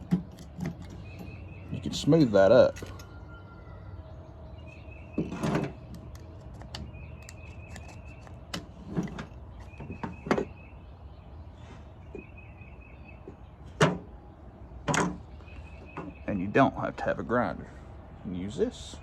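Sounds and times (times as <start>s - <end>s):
knife blade scraping plastic: 6.6s - 8.4s.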